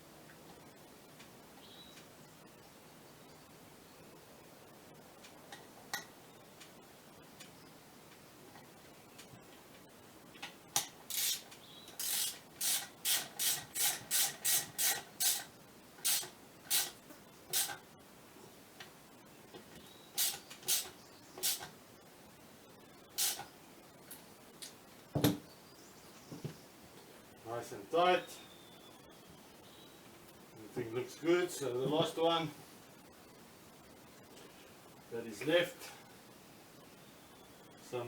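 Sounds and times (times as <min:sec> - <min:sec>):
hand tool rasping strokes: 0:11.1 - 0:17.8.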